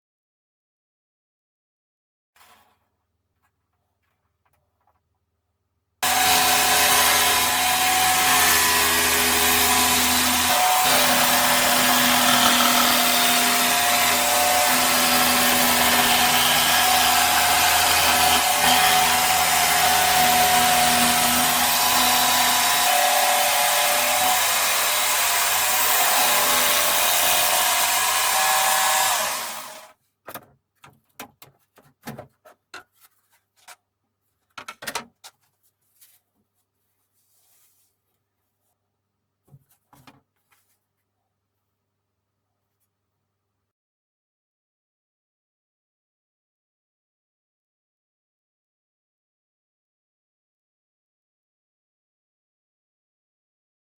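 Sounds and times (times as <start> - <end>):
jigsaw sawing wood: 6.0 - 30.0.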